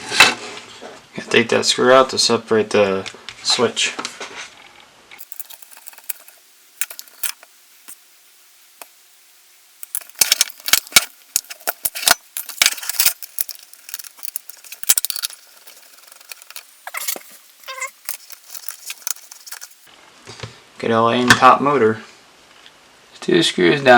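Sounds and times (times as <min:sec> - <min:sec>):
sharp clicks of parts handled: 0:09.8 - 0:19.9.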